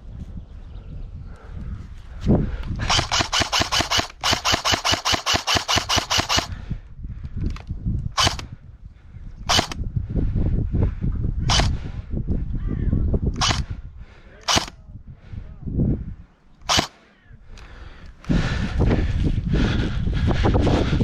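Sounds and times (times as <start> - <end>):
airsoft gun firing: 2.8 - 6.5, 8.2 - 8.4, 9.5 - 9.8, 11.5 - 11.7, 13.4 - 13.6, 14.4 - 14.7, 16.6 - 17.0.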